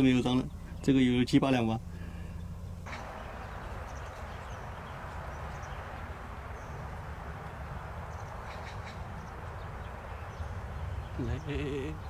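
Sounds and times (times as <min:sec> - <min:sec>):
faint bird chirps: 0:00.0 - 0:05.8.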